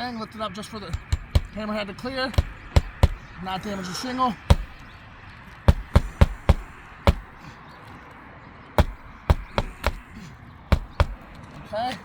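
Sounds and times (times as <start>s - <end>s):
hammer driving roofing nails: 0.9s - 3.8s, 4.4s - 4.9s, 5.7s - 7.5s, 8.8s - 11.5s.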